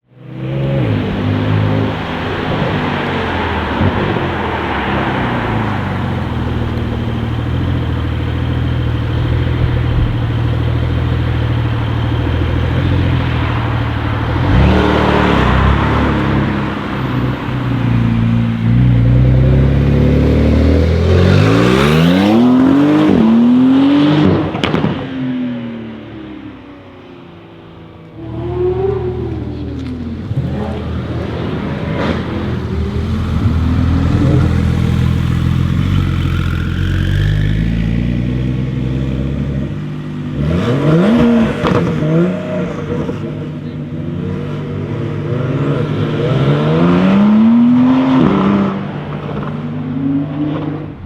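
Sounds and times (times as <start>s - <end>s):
car engine idling and revving: 0.0s - 51.0s
exhaust crackle: 1.0s - 22.4s, 28.8s - 42.3s.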